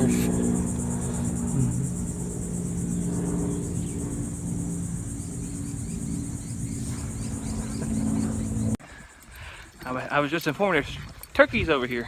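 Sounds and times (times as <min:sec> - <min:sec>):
low steady hum: 0:00.0 - 0:08.8
shrill insect chorus: 0:00.0 - 0:11.9.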